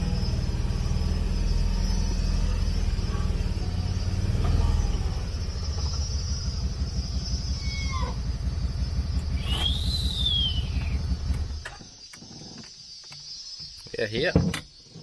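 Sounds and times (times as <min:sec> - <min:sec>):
high squeal: 0:00.0 - 0:11.1
vehicle engine and tyre rumble: 0:00.0 - 0:13.6.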